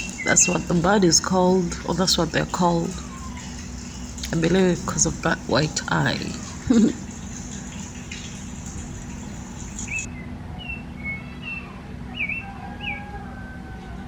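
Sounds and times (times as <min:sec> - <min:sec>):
steady low hum: 0:00.0 - 0:14.0
small birds chirping: 0:06.4 - 0:13.0
whistled bird notes: 0:09.8 - 0:14.0.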